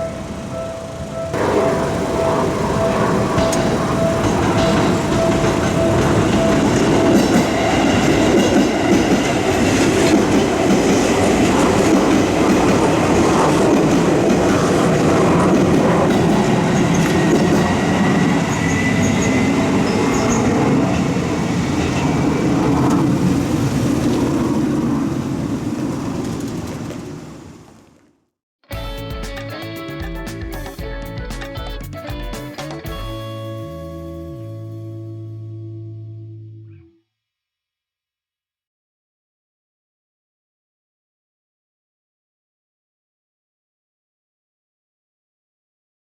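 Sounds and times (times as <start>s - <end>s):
high wheel squeal: 0.0s - 9.7s, 15.6s - 22.3s
train wheels clickety-clack: 0.6s - 23.2s.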